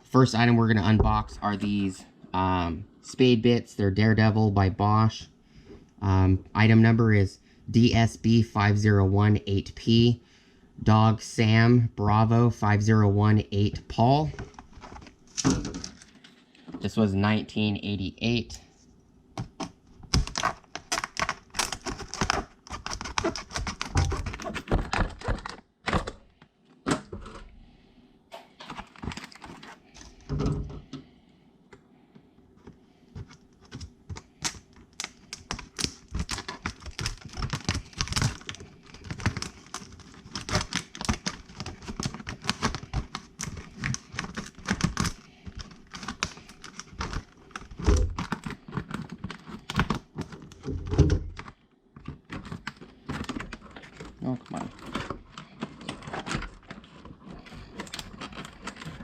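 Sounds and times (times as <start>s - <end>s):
plastic packaging clicks and rattles: 14.3s - 16.4s, 19.4s - 27.4s, 28.6s - 30.8s, 32.6s - 59.0s.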